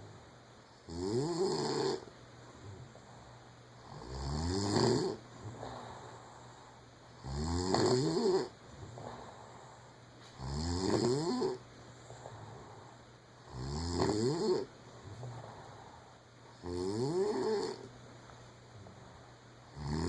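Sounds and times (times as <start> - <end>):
woman snoring: 0.8 - 2.9, 3.8 - 6.3, 7.2 - 9.8, 10.4 - 11.6, 12.2 - 17.9, 19.7 - 20.0
soft breathing: 2.0 - 3.9, 5.1 - 7.2, 8.5 - 10.4, 11.5 - 13.4, 14.6 - 16.6, 17.7 - 19.7.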